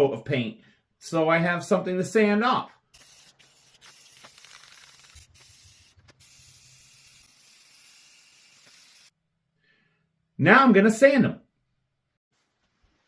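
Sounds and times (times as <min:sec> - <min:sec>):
spray paint can hissing: 0:02.9 - 0:09.2.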